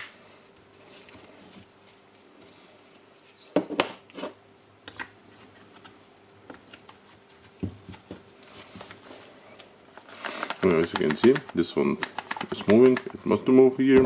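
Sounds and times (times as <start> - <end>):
plastic and metal parts clicking: 10.2 - 13.2.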